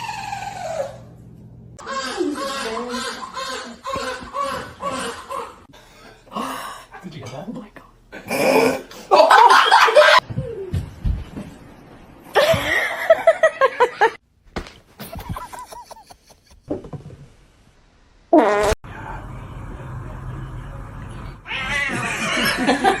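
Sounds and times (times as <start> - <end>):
sputtering fart-like noise: 18.3 - 18.8.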